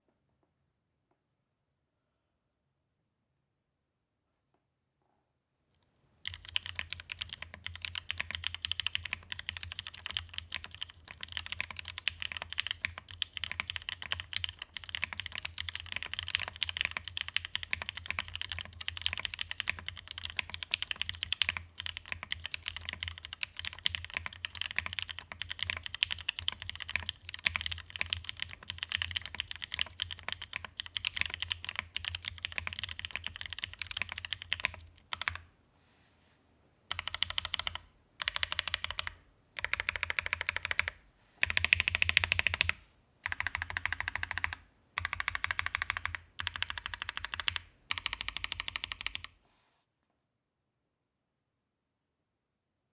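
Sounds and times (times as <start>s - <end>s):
fast typing on mechanical keyboard: 6.2s - 35.4s, 36.9s - 49.4s.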